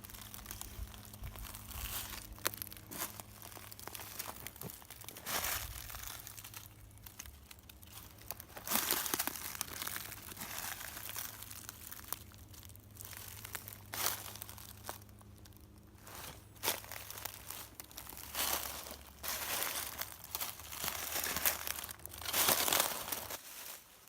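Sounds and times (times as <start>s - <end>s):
footsteps crunching dry leaves: 0.0s - 24.0s.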